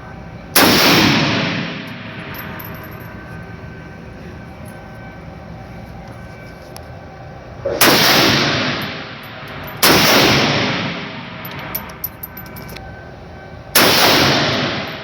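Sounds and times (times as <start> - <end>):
rifle shots echoing: 0.6 - 2.0, 7.6 - 11.4, 13.8 - 15.0.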